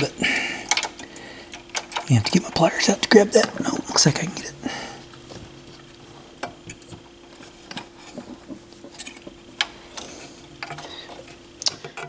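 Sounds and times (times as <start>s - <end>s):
faint steady hum: 0.0s - 12.0s
small metal parts clicking: 0.6s - 2.4s.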